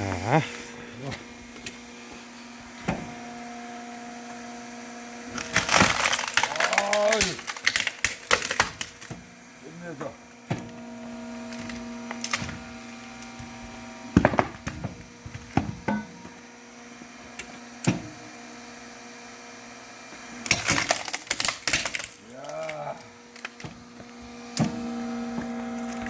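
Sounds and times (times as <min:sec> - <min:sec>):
log splitter humming: 0:00.0 - 0:26.0
log cracking and splintering: 0:05.3 - 0:09.2, 0:11.5 - 0:13.4, 0:20.4 - 0:24.8.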